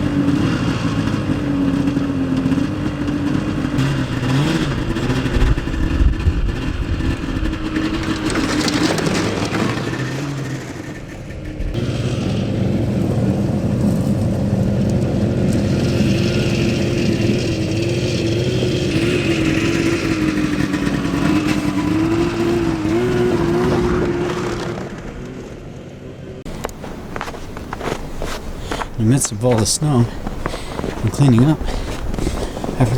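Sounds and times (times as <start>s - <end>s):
vehicle engine running: 0.0s - 32.9s.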